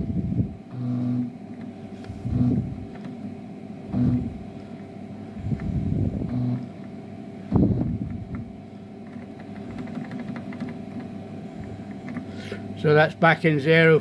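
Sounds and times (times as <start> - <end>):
stepper motor hum: 0.0 - 14.0.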